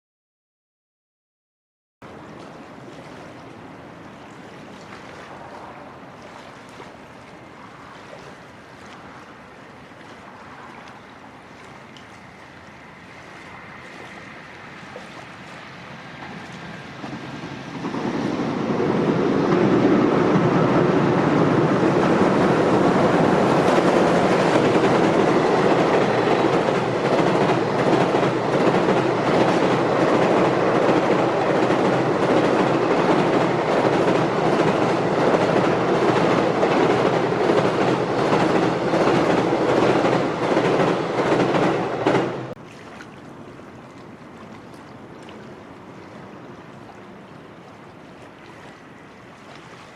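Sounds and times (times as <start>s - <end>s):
freight train rumbling on bridge: 5.2s - 42.6s
wheels clacking over rail joints: 22.1s - 42.5s.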